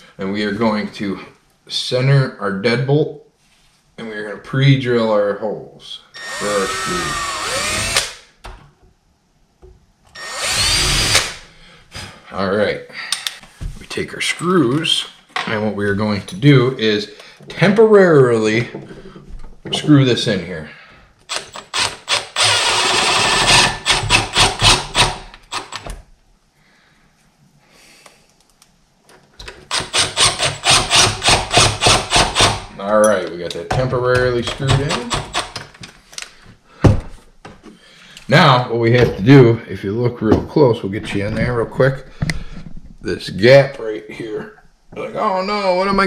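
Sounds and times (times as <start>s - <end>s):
power drill whining: 6.2s - 8.2s, 10.2s - 11.4s, 21.3s - 25.9s, 29.7s - 32.6s
screws driven into wood: 6.2s - 8.2s, 10.1s - 11.4s, 21.3s - 26.0s, 29.6s - 32.7s, 34.4s - 35.7s.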